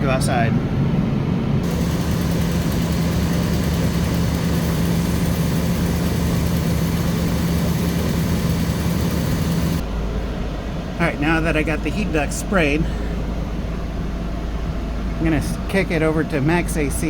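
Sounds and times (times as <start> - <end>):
aerosol spray hissing: 1.6 - 9.8
engine idling: 1.6 - 15.8.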